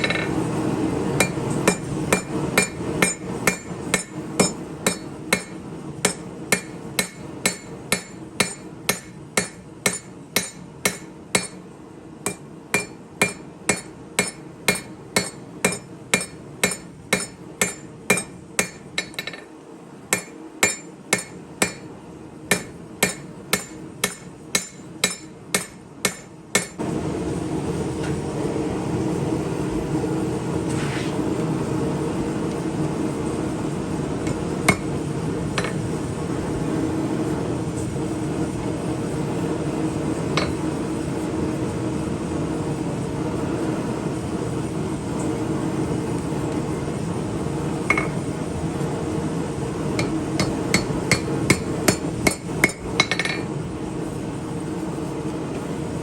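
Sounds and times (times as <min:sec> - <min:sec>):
hammer striking blade on anvil: 0:00.0 - 0:00.4, 0:01.2 - 0:11.6, 0:12.3 - 0:19.5, 0:20.1 - 0:21.9, 0:22.5 - 0:26.8, 0:40.4 - 0:40.6, 0:47.9 - 0:48.2, 0:50.0 - 0:53.4.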